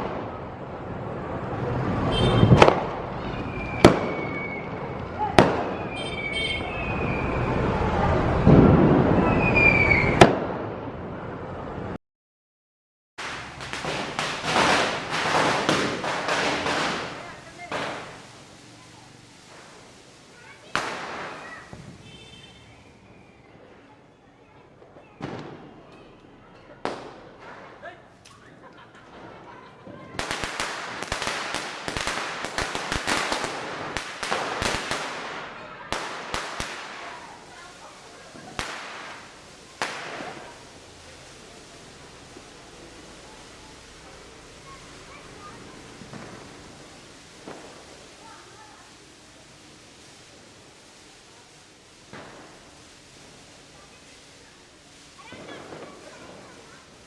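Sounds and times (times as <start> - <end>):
whistling firework: 0.0 - 10.7, 13.2 - 57.0
firecracker boom: 0.0 - 11.2, 13.2 - 57.0
firecracker crack: 0.0 - 11.2, 13.2 - 57.0
firework crackle: 0.0 - 11.2, 13.2 - 57.0.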